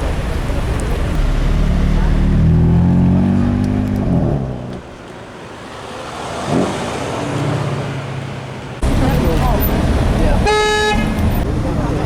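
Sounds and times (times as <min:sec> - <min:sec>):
car engine running: 0:00.0 - 0:04.1
street traffic: 0:00.0 - 0:12.0.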